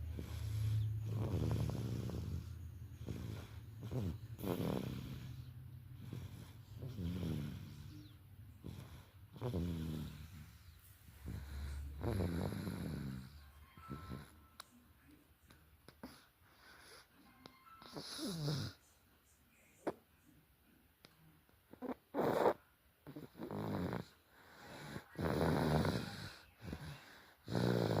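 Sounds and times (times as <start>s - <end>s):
baby snoring: 0.0s - 14.4s, 17.8s - 18.8s, 21.7s - 28.0s.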